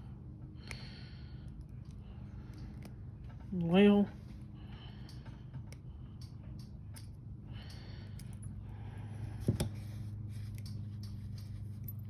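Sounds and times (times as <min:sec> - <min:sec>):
low steady hum: 0:00.0 - 0:12.0
breathing close to microphone: 0:07.5 - 0:10.1.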